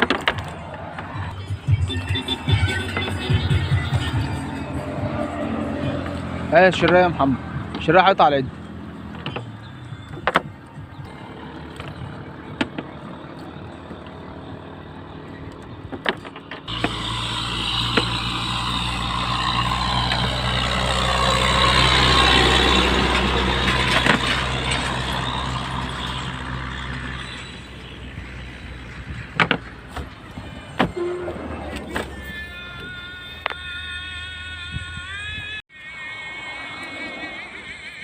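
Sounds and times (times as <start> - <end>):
motor passing by: 0.0 - 10.1, 10.8 - 33.2, 35.8 - 38.0
motor engine humming: 0.0 - 38.0.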